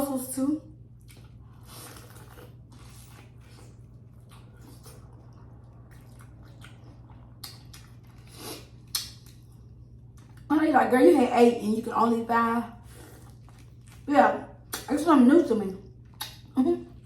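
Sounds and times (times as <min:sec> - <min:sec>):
steady low hum: 0:00.0 - 0:17.0
wet chewing: 0:01.0 - 0:10.5, 0:12.9 - 0:14.1.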